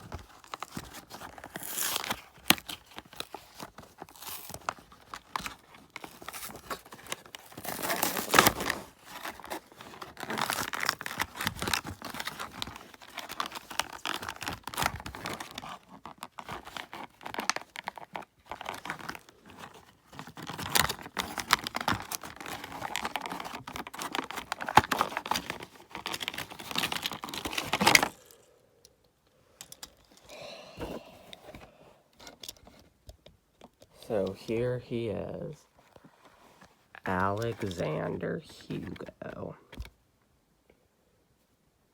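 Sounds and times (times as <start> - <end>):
plastic packaging tearing and crinkling: 0.0 - 28.5.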